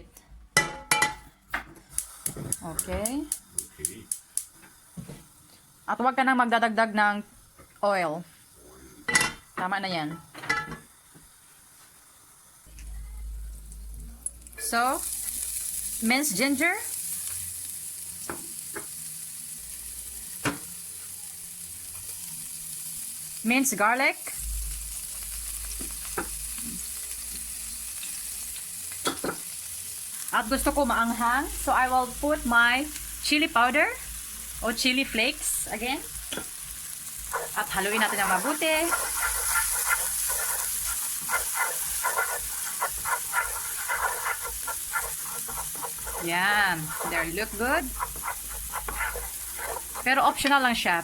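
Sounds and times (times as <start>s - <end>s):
ginger sizzling in a frying pan: 0.9s - 12.8s, 13.4s - 51.0s
utensil scraping a pan: 37.3s - 50.4s.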